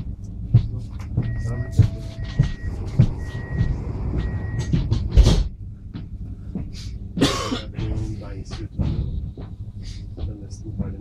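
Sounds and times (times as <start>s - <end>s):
train low rumble: 0.0s - 11.0s
high beeping tone: 1.2s - 5.0s.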